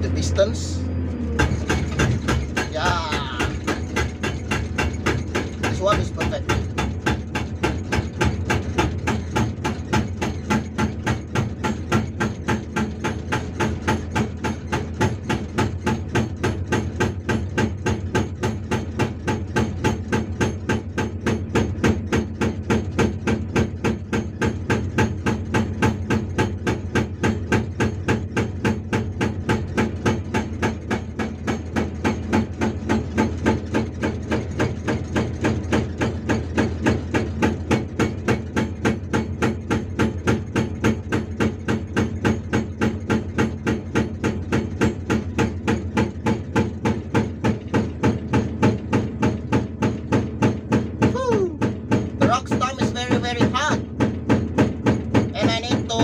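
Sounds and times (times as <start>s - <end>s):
excavator engine running: 0.0s - 56.0s
hydraulic breaker hammering rock: 1.3s - 56.0s.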